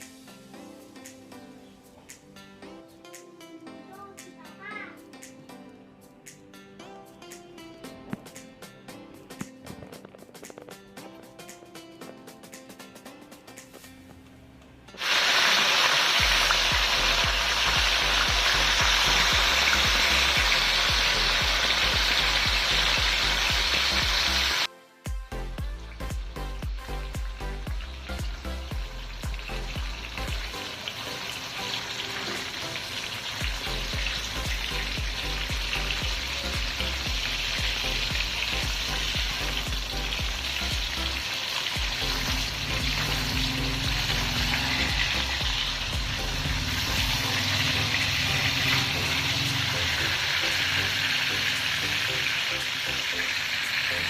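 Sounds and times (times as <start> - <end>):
meat sizzling in oil: 0.0 - 0.7, 15.0 - 24.7, 27.7 - 54.0.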